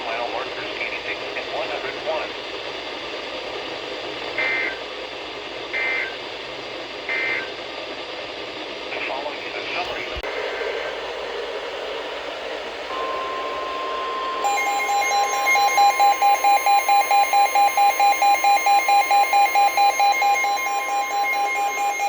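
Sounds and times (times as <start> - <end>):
steady alarm tone: 0.0 - 7.7, 10.3 - 22.0
radio hiss: 0.0 - 22.0
pulsing alarm beeps: 4.1 - 5.0, 5.7 - 6.3, 7.0 - 7.6, 12.9 - 22.0.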